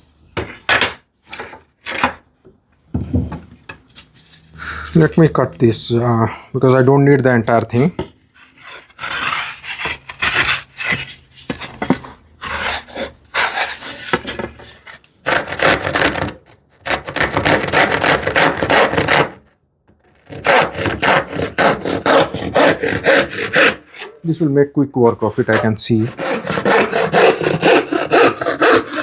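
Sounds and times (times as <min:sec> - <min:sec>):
hand saw cutting wood: 0:08.4 - 0:11.2, 0:12.4 - 0:19.4, 0:20.1 - 0:24.4, 0:25.4 - 0:29.0.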